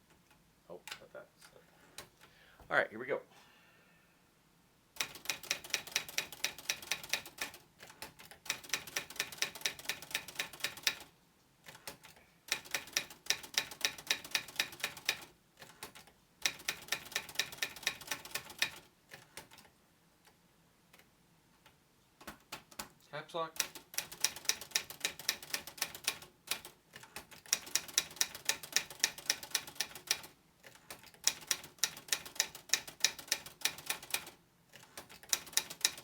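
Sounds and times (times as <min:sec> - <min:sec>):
typewriter key strikes: 0:05.0 - 0:11.0.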